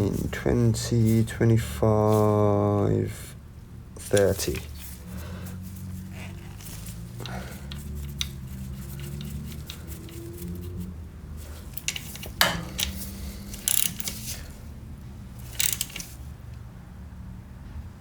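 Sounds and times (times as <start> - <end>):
steady low hum: 0.0 - 18.0
metal hand tools clinking: 11.5 - 14.5, 15.4 - 16.2.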